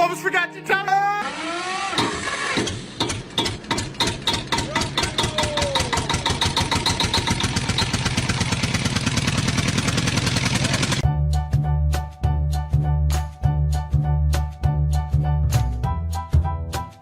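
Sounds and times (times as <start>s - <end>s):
engine running with rapid beat: 1.3s - 11.0s.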